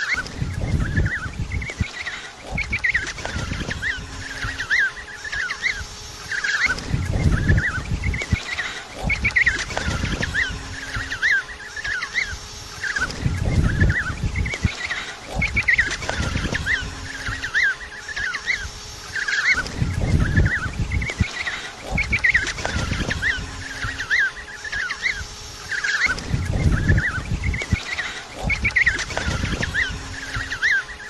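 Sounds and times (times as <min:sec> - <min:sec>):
penguin colony calling: 0:00.0 - 0:31.0
low rumbling noise: 0:06.6 - 0:19.0, 0:19.6 - 0:25.3, 0:26.1 - 0:30.7.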